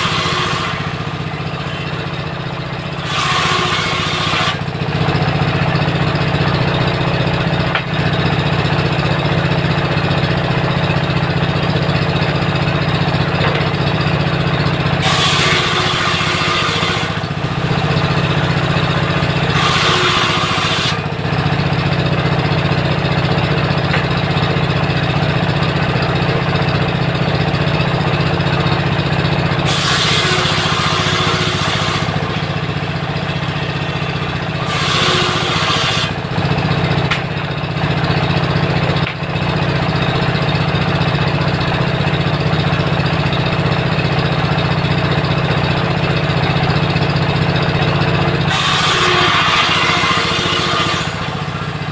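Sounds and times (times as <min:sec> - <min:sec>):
diesel engine running: 0:00.0 - 0:51.9
saw blade ripping through timber: 0:15.0 - 0:17.2, 0:19.5 - 0:21.0, 0:29.7 - 0:32.4, 0:48.5 - 0:51.7.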